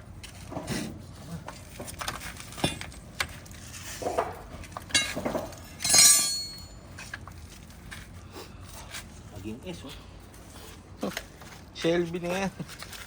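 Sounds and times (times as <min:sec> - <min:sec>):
metal tools clinking: 0:04.9 - 0:06.8
ringing metallic clatter: 0:05.8 - 0:06.8.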